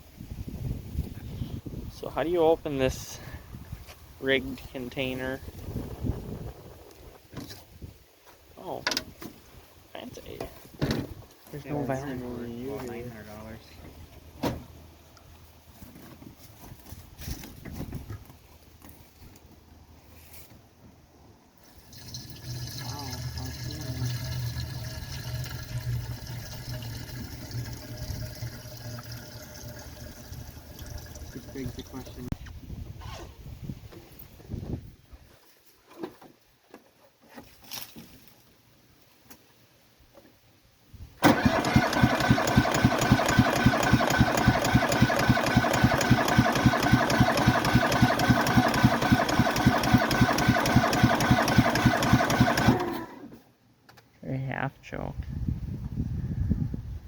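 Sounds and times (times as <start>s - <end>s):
engine starter cranking: 21.6s - 32.0s, 41.2s - 53.4s
fuel pouring into tank: 21.6s - 32.4s, 41.2s - 53.1s.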